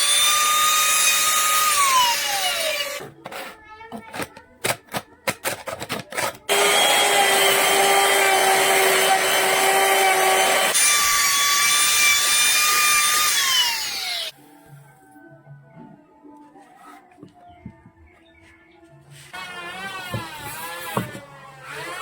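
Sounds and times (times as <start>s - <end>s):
power tool cutting wood: 0.0s - 3.0s, 6.5s - 14.3s, 19.3s - 22.0s.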